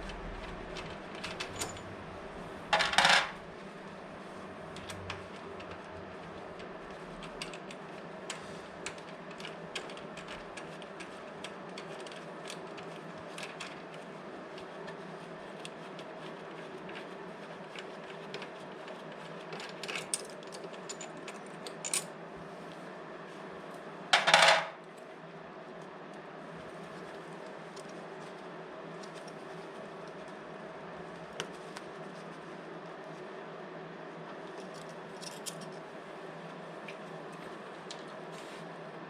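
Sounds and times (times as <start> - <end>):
steady hum: 0.0 - 7.1
tools and bolts clinking on metal: 1.3 - 1.9.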